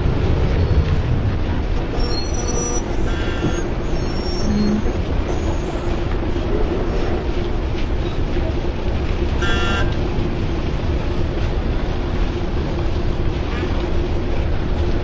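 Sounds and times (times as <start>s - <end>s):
rumble of passing vehicles: 0.0s - 15.0s
brief high tones: 2.1s - 5.0s.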